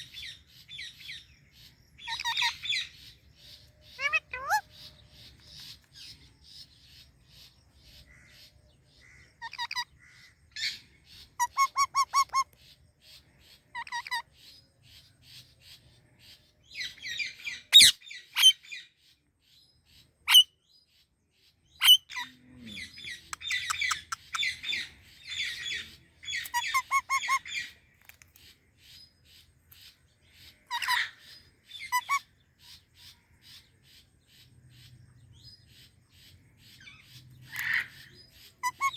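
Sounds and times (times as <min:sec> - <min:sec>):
parakeets chirping and squawking: 0:02.0 - 0:03.2, 0:03.9 - 0:05.9, 0:09.4 - 0:09.9, 0:11.3 - 0:12.5, 0:13.8 - 0:14.3, 0:17.7 - 0:18.0, 0:22.8 - 0:27.8, 0:30.6 - 0:32.3, 0:36.8 - 0:38.9.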